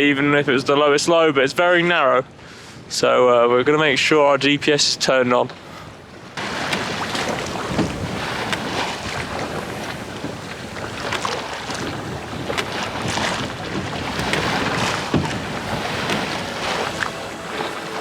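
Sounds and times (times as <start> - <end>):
water rushing along hull: 0.0 - 18.0
wind buffeting microphone: 1.9 - 18.0
water splashes: 4.8 - 18.0.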